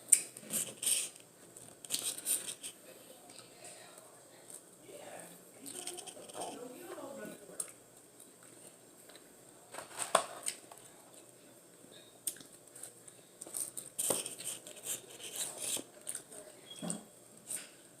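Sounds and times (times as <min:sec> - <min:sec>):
eating crunches: 0:12.2 - 0:16.3.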